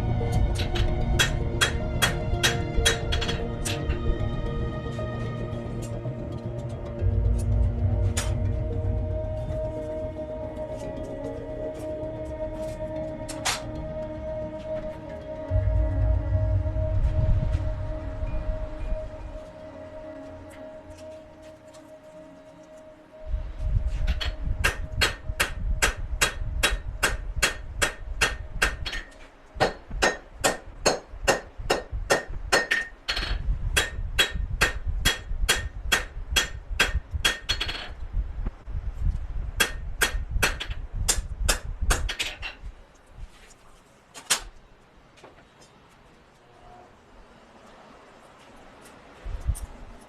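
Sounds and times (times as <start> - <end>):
hammer striking steel on anvil: 0.5 - 3.9, 24.6 - 37.8, 39.6 - 42.3.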